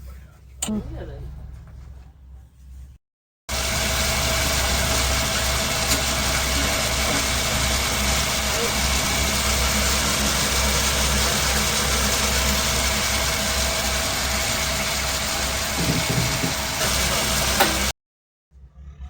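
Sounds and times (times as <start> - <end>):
metal lathe humming: 3.5 - 17.9.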